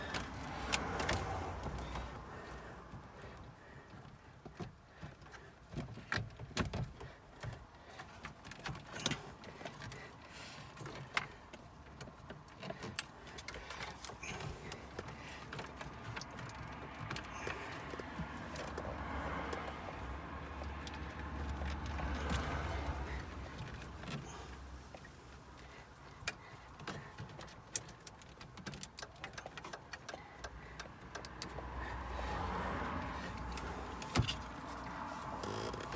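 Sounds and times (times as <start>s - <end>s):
rubbing and rustling: 32.3s - 35.9s.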